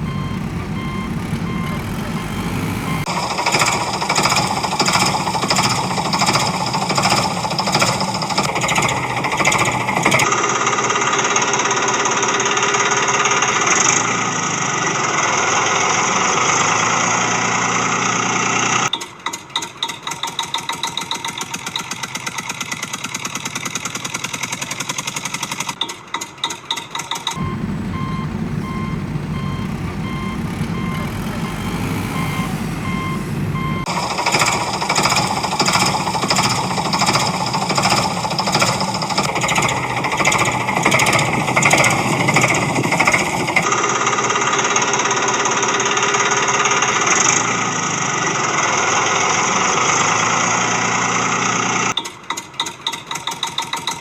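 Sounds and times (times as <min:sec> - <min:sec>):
low engine rumble: 0:00.0 - 0:06.7, 0:27.4 - 0:43.6
reversing beeps: 0:00.0 - 0:10.3, 0:27.3 - 0:43.6
fast repetitive hammering: 0:00.0 - 0:10.9, 0:26.4 - 0:43.7
steady machine noise: 0:00.0 - 0:13.4, 0:27.4 - 0:46.7
rapid even clatter: 0:33.8 - 0:46.7.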